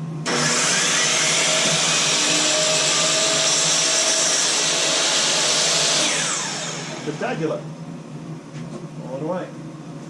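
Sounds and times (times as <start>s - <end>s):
power saw cutting wood: 0.3s - 7.5s.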